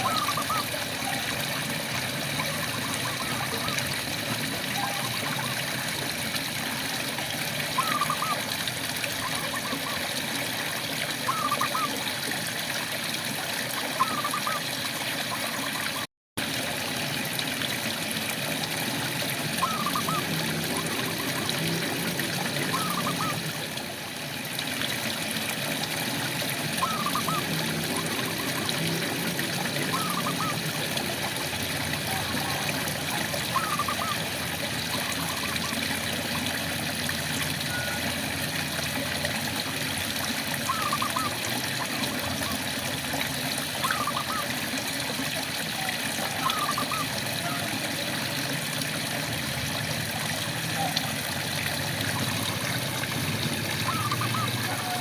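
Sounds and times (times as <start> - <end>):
frogs calling: 0.0 - 1.3, 2.4 - 3.9, 7.7 - 8.5, 11.2 - 12.1, 13.8 - 14.7, 19.5 - 23.6, 26.7 - 30.8, 32.0 - 36.4, 40.6 - 42.6, 43.8 - 44.6, 45.7 - 47.8, 52.1 - 55.0
water trickling and dripping: 0.0 - 55.0.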